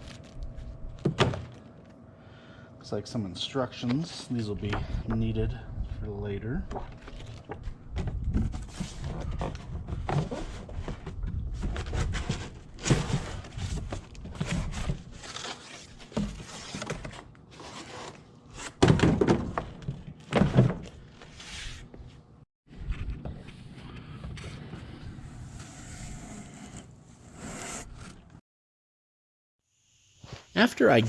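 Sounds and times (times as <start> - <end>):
packaging rustling and scraping: 0.0 - 1.8, 8.4 - 18.8.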